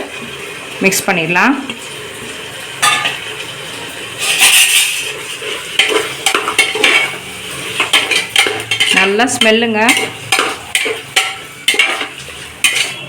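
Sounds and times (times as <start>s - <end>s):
light sizzle: 0.0s - 13.0s
spoon scraping cooking pot: 4.2s - 13.0s
spoon clinking against pot: 5.8s - 7.2s, 7.8s - 13.0s.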